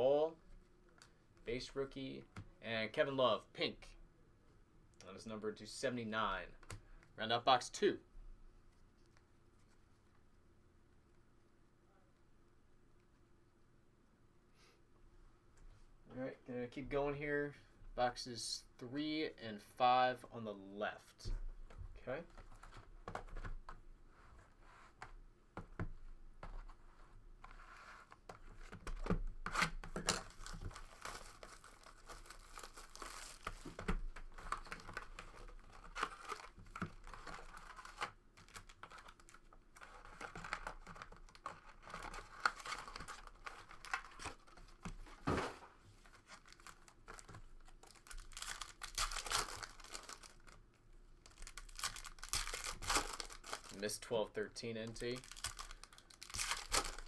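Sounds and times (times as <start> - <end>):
wrappers crinkling while torn open: 29.6 - 33.6, 46.3 - 50.6, 51.2 - 53.9, 55.1 - 57.0.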